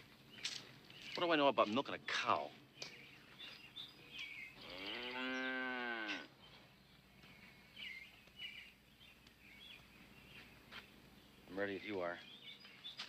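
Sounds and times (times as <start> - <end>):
cow mooing: 4.6 - 6.3.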